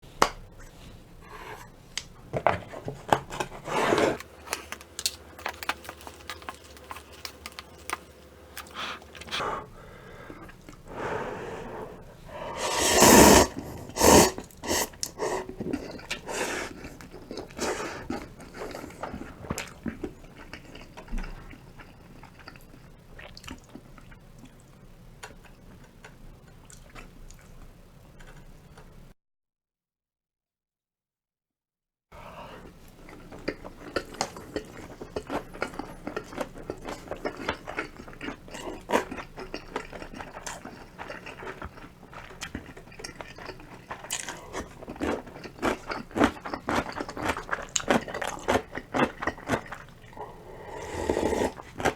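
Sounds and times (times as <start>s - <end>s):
chewing: 2.0s - 10.9s, 13.1s - 29.0s, 32.6s - 51.9s.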